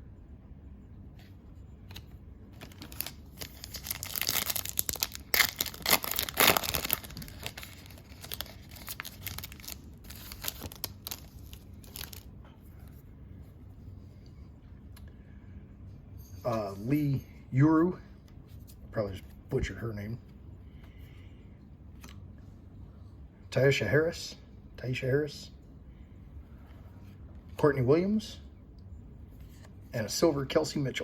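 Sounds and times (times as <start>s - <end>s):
cards rustling and clicking: 1.2s - 12.3s
foil wrapper tearing and crinkling: 2.6s - 12.3s.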